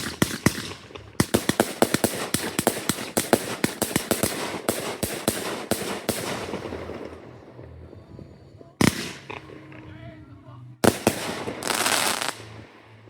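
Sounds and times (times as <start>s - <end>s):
fireworks bangs: 0.0s - 10.1s, 10.8s - 13.0s
fireworks crackle: 0.0s - 10.1s, 10.8s - 13.0s
low rumble: 6.3s - 11.7s, 12.3s - 13.0s.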